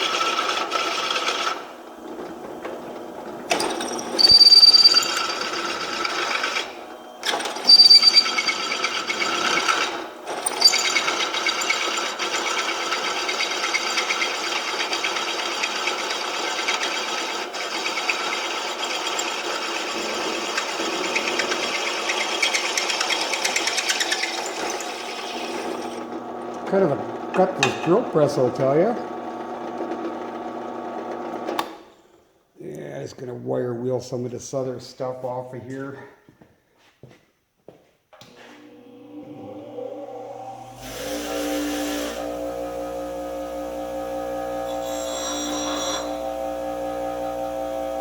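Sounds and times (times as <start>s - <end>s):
drill press running: 0.0s - 31.9s, 38.5s - 48.0s
drill bit squealing: 3.8s - 9.8s, 10.4s - 12.6s, 17.9s - 26.0s, 44.4s - 48.0s.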